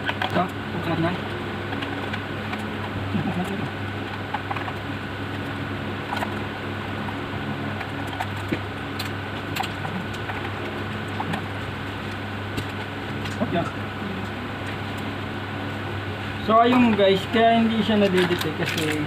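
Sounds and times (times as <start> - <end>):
background hum: 0.0 - 19.0.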